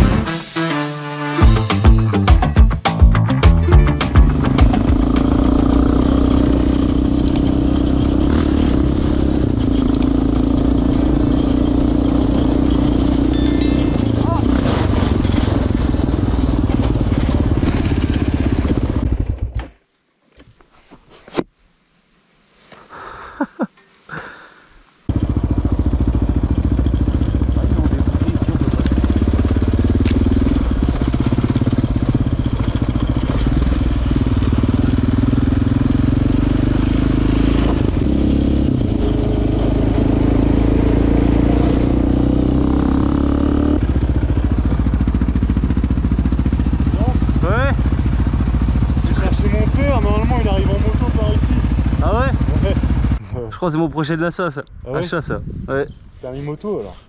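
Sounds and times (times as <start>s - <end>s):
quad engine running: 4.0s - 19.7s, 25.1s - 53.2s.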